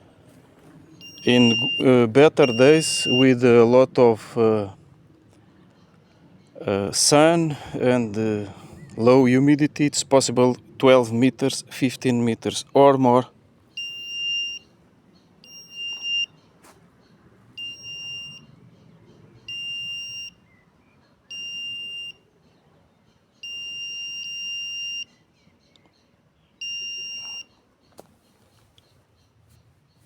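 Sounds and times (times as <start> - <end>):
metal detector beeps: 1.0 - 3.4, 13.8 - 14.7, 15.4 - 16.4, 17.6 - 18.5, 19.5 - 20.4, 21.3 - 22.2, 23.4 - 25.1, 26.6 - 27.6.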